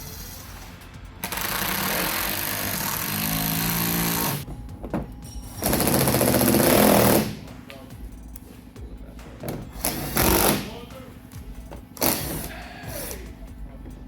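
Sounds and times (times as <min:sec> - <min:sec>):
power driver whirring: 0:01.2 - 0:04.5.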